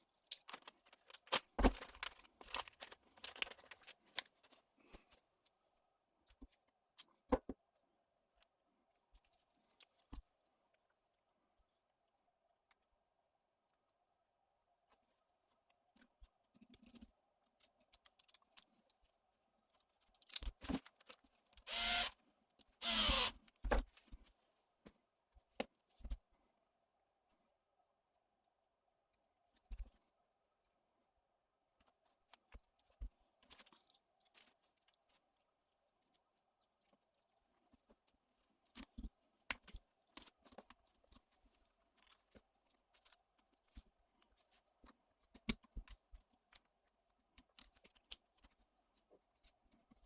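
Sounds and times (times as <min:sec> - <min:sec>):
light clicks and taps of tools: 0:37.7 - 0:50.0.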